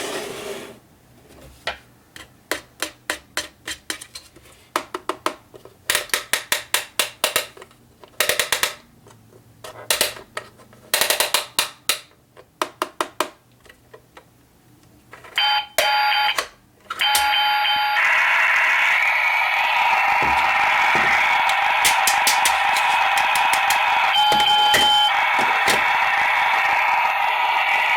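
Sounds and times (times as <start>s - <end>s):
plastic toy clicks and clattering: 5.9s - 9.2s, 9.8s - 12.2s, 21.4s - 25.8s
toy appliance buzzing: 17.0s - 27.9s
electronic beeping tones: 24.1s - 25.2s.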